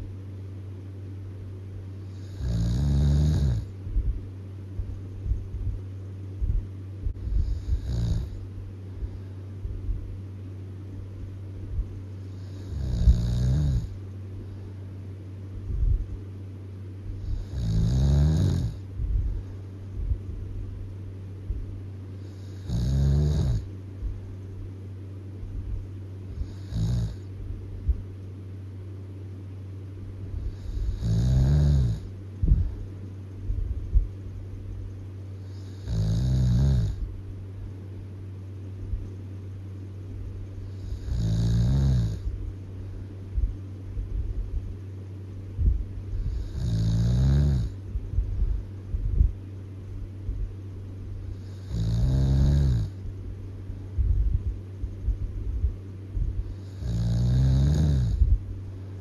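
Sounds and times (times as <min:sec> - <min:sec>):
steady low hum: 0:00.0 - 0:59.0
loud snoring: 0:02.1 - 0:03.7, 0:07.2 - 0:08.4, 0:12.3 - 0:14.0, 0:17.2 - 0:18.8, 0:22.2 - 0:23.7, 0:26.4 - 0:27.3, 0:30.5 - 0:32.1, 0:35.5 - 0:37.0, 0:40.8 - 0:42.2, 0:46.2 - 0:47.8, 0:51.3 - 0:52.9, 0:56.5 - 0:58.2.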